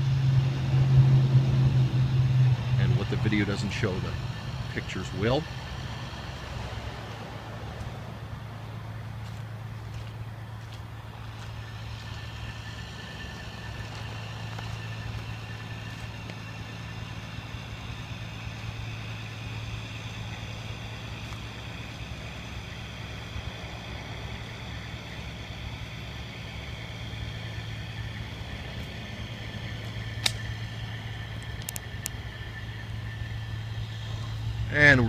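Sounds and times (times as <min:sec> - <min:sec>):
diesel truck engine idling: 0:00.0 - 0:35.0
faint high whine: 0:00.0 - 0:35.0
sharp click: 0:30.2 - 0:30.5.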